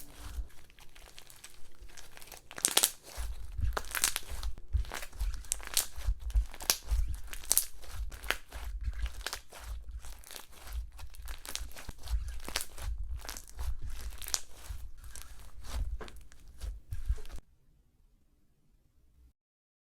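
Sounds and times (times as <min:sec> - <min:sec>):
slime crackling and popping: 0:00.0 - 0:17.4
soft squelching thuds: 0:03.0 - 0:17.4.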